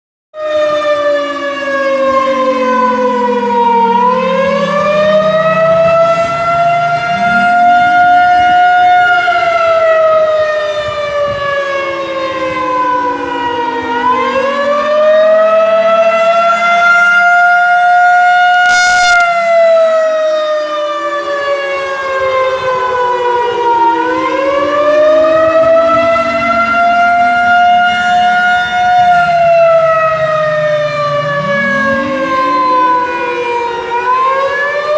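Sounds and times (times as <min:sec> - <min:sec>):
tornado warning siren: 0:00.4 - 0:10.5, 0:15.2 - 0:19.4, 0:23.9 - 0:34.9.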